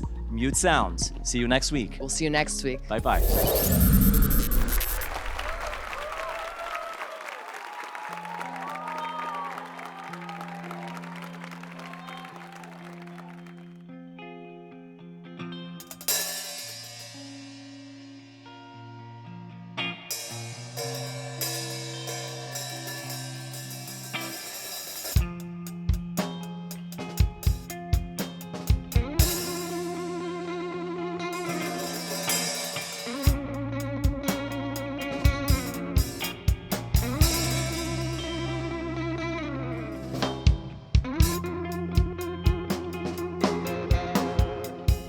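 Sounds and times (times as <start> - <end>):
bass line: 0.0 - 6.4, 36.4 - 45.0
hi-hat: 3.0 - 5.1
effects-laden electric guitar: 12.8 - 45.0
rock band playing: 15.7 - 45.0.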